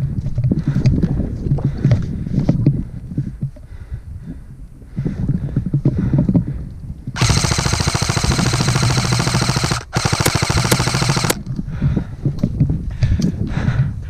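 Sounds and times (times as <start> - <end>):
airsoft rifle automatic fire: 7.2 - 11.4.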